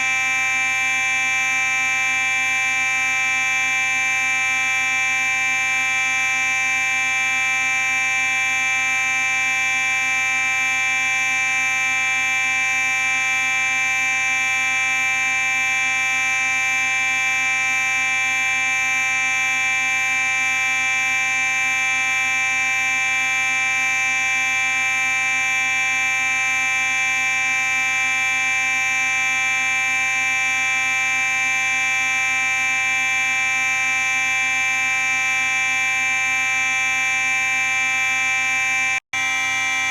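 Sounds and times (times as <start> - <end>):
fire alarm steady tone: 0.0 - 39.9.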